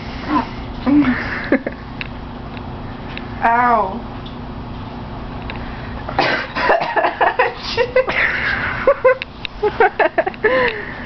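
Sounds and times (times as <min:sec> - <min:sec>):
girl giggling: 0:00.3 - 0:01.8, 0:06.6 - 0:10.7.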